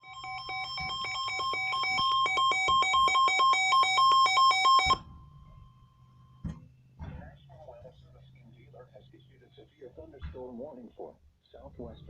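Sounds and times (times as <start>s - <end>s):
steady warning tone: 0.0s - 6.5s.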